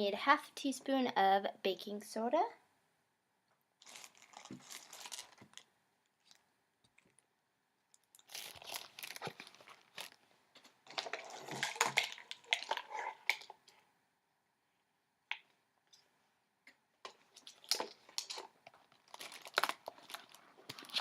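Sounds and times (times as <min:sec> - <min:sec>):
spoon scraping powder: 0:11.2 - 0:13.6.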